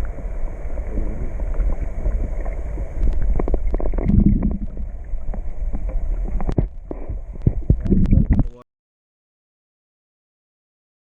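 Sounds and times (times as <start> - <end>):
wind rumbling on microphone: 0.0 - 8.6.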